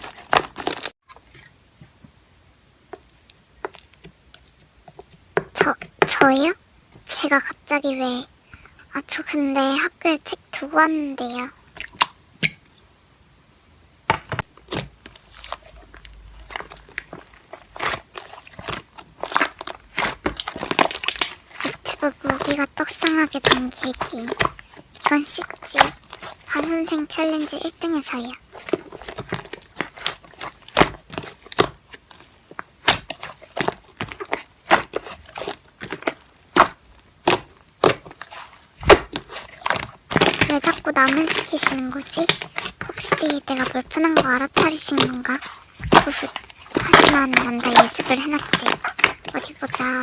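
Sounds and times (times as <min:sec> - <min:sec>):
slime squished by hand: 0:14.6 - 0:50.0.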